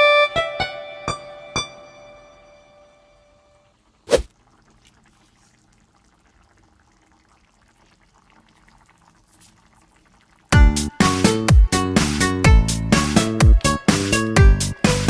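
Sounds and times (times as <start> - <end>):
food cooking in a pan: 3.8 - 10.9.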